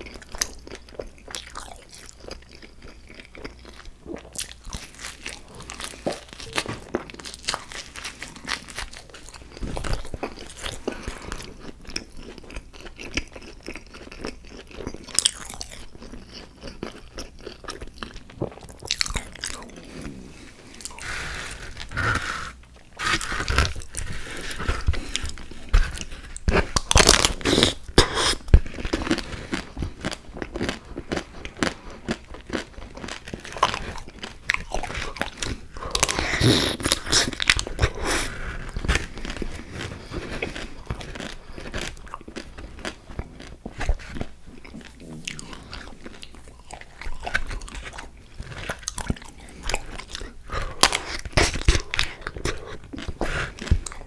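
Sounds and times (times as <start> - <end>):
crunchy biting and chewing: 0.0 - 54.0.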